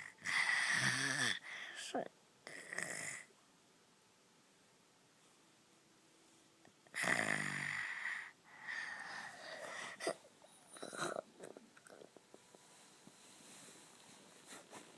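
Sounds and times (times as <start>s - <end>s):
person snoring: 0.0s - 1.6s, 2.5s - 3.3s, 6.9s - 10.2s.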